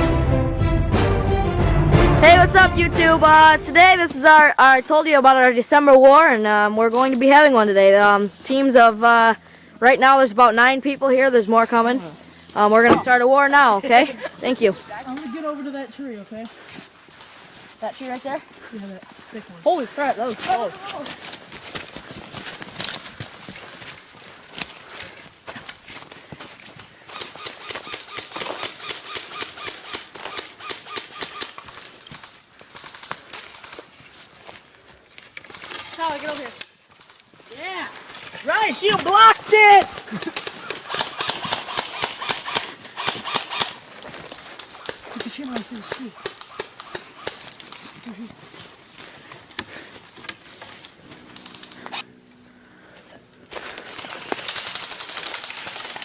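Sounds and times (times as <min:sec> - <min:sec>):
airsoft guns firing full auto: 0:27.1 - 0:31.8, 0:40.4 - 0:43.8, 0:54.0 - 0:56.0
airsoft guns firing: 0:39.9 - 0:43.8.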